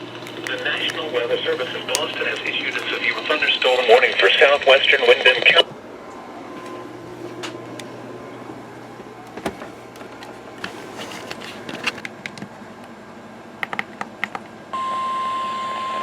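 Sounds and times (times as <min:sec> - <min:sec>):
steady alarm tone: 0:14.7 - 0:16.0.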